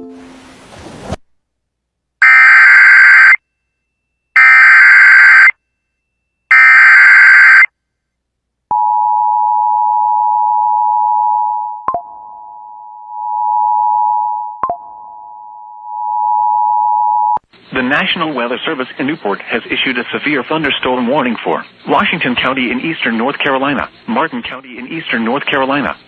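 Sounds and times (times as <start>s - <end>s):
digital data tone bursts: 2.2s - 3.4s, 4.4s - 5.5s, 6.5s - 7.7s
two-tone attention signal: 2.2s - 3.4s, 4.4s - 5.5s, 6.5s - 7.7s.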